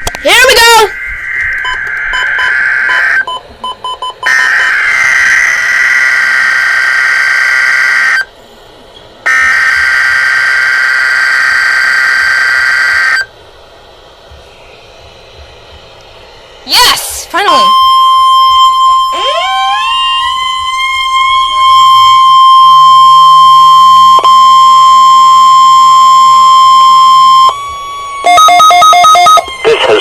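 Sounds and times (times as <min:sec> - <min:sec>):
screeching digital data tones: 0:00.0 - 0:08.3, 0:09.3 - 0:13.3, 0:16.7 - 0:30.0
short beeps: 0:01.4 - 0:04.4, 0:17.5 - 0:19.4.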